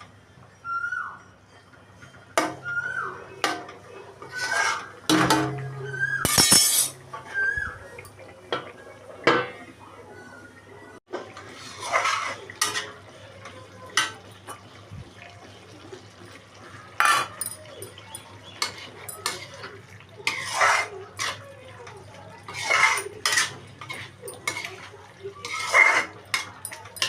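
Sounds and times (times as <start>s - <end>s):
metal utensils clinking on pots: 3.4s - 7.4s, 11.1s - 14.7s, 16.2s - 27.0s.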